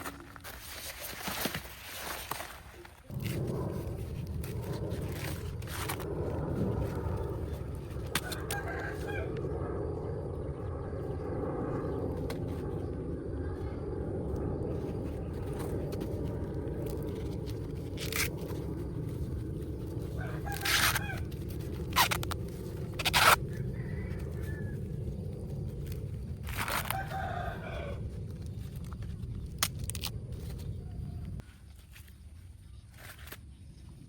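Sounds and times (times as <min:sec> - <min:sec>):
low background rumble: 0:02.9 - 0:31.4
chicken calling: 0:20.2 - 0:21.3.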